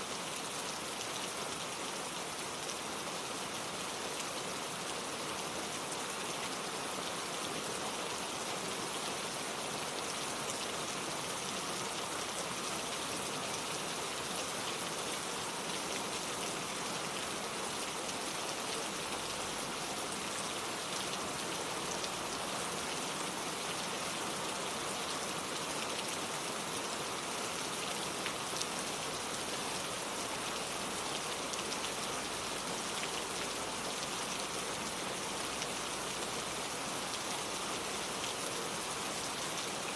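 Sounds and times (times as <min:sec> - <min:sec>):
steady rain pattering: 0:00.0 - 0:39.9.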